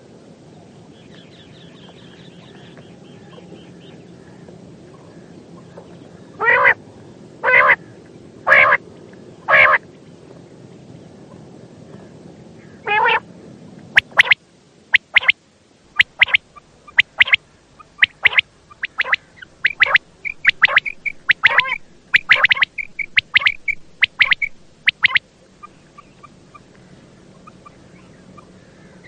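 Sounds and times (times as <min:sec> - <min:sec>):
quail calling: 0:07.4 - 0:07.9, 0:08.5 - 0:08.8, 0:09.5 - 0:09.8, 0:12.8 - 0:13.2, 0:14.0 - 0:15.4, 0:16.0 - 0:29.0.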